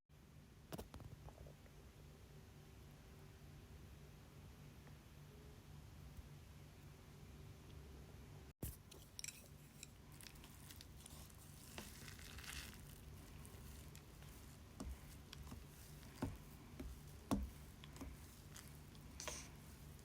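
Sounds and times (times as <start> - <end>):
low steady hum: 0.1 - 20.0
soft rustling: 8.6 - 20.0.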